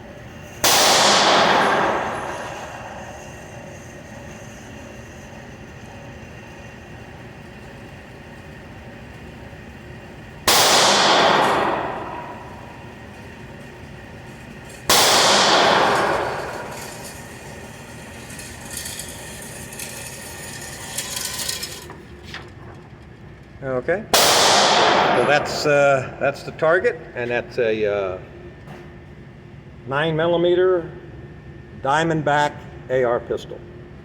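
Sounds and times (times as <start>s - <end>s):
pistol shots: 0.6s - 2.7s, 10.5s - 12.6s, 14.9s - 16.8s, 24.2s - 25.6s.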